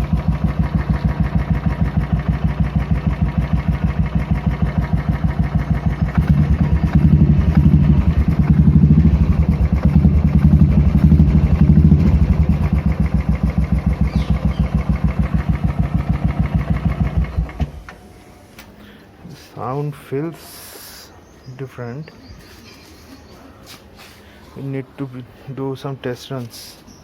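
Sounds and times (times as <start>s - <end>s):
motorcycle engine thumping: 0.0s - 18.0s.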